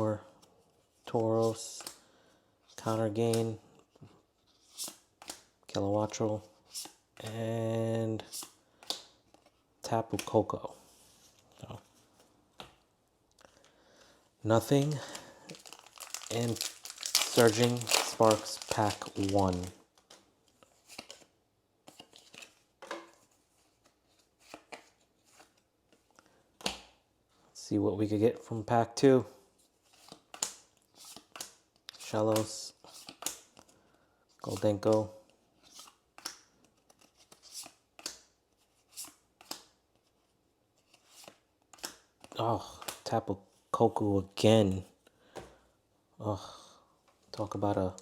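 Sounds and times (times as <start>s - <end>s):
foil wrapper rustling: 14.7s - 19.8s.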